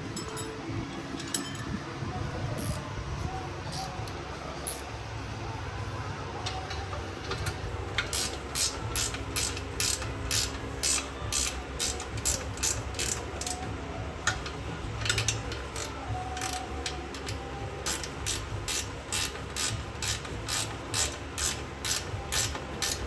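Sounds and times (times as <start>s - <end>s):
low shop hum: 0.0s - 23.0s
ratchet wrench clicking: 2.6s - 2.8s, 3.7s - 4.9s, 7.3s - 23.0s.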